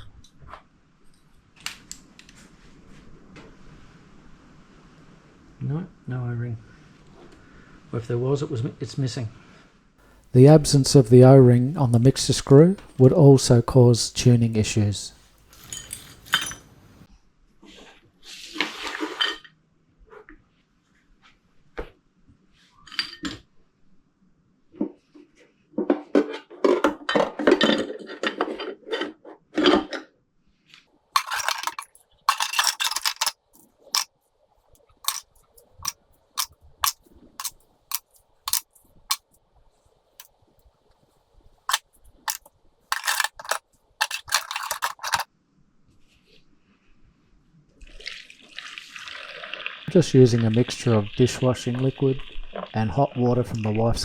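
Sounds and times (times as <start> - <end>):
small metal parts clinking: 15.4 - 16.7, 31.2 - 34.1, 35.1 - 39.3, 41.7 - 45.3.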